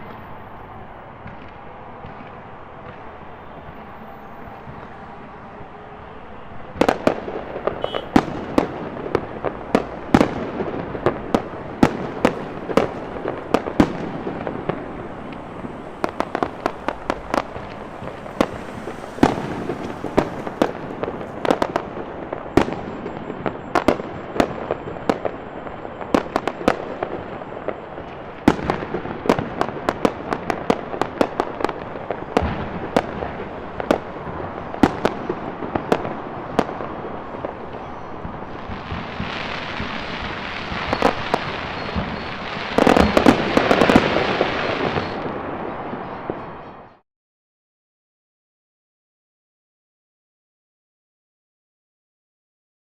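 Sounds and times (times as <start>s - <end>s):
fireworks and firecrackers banging: 0.0s - 47.0s.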